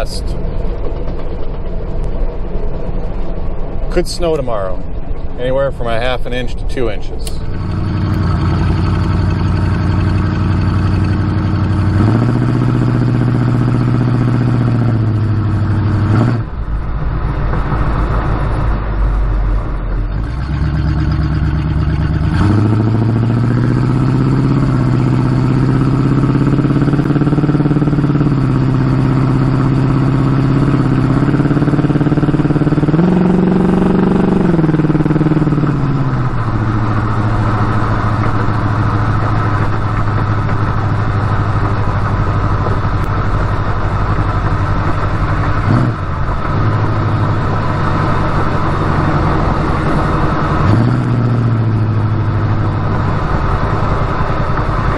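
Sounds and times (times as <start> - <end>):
car engine running: 0.0 - 54.9.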